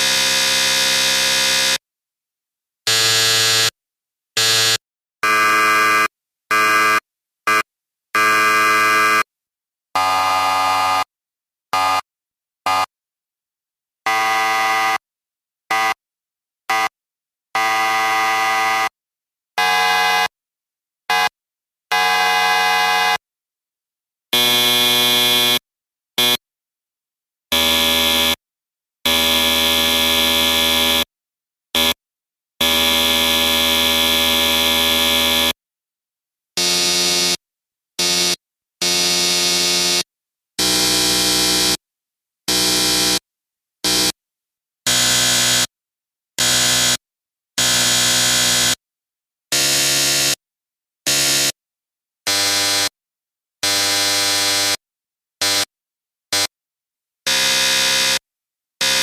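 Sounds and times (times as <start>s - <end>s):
electric buzzer blasts: 0.0s - 1.8s, 2.9s - 3.8s, 4.4s - 9.3s, 10.0s - 11.1s, 11.7s - 12.9s, 15.7s - 16.0s, 16.7s - 17.0s, 21.1s - 23.2s, 24.3s - 25.6s, 26.2s - 26.4s, 27.5s - 28.4s, 29.1s - 31.1s, 36.6s - 37.4s, 38.0s - 41.8s, 42.5s - 43.2s, 43.8s - 44.2s, 44.9s - 45.7s, 46.4s - 47.0s, 47.6s - 48.8s, 49.5s - 50.4s, 51.1s - 51.6s, 52.3s - 53.0s, 53.6s - 54.7s, 57.3s - 58.2s, 58.8s - 59.0s.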